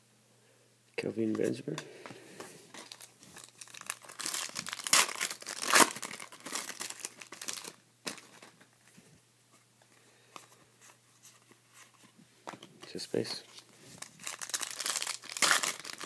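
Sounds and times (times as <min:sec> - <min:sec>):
plastic wrapper tearing and crinkling: 0:02.7 - 0:08.6, 0:14.0 - 0:16.0.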